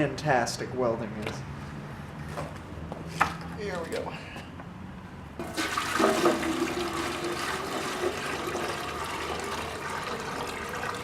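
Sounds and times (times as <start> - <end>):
water pouring into metal tank: 5.4 - 11.0.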